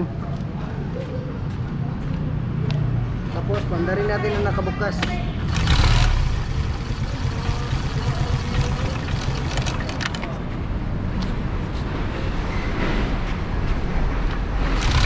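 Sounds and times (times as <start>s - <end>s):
engine running steadily: 5.4s - 10.7s, 14.6s - 15.0s
decompressor clacking: 5.5s - 10.3s, 14.8s - 15.0s.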